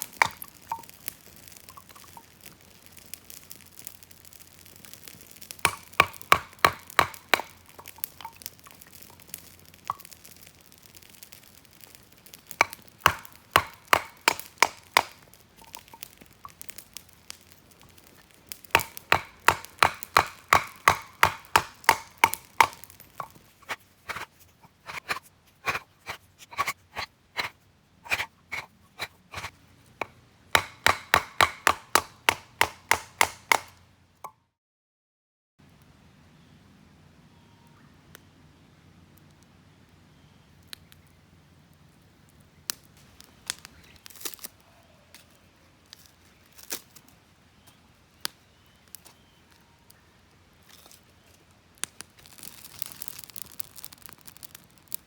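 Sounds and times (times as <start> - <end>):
hatchet chopping wood: 0.0 - 0.9, 5.6 - 8.3, 12.5 - 15.9, 18.6 - 33.8.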